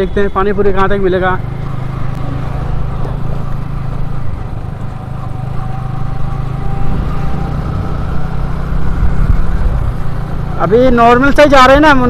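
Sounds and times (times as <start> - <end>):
motorcycle engine running: 0.0 - 12.0
wind rumbling on microphone: 8.6 - 10.0.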